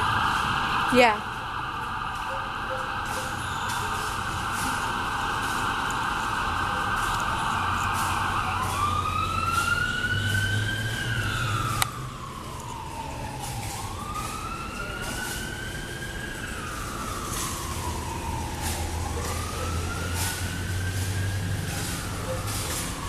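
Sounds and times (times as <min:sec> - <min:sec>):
siren wailing: 0:00.0 - 0:23.0.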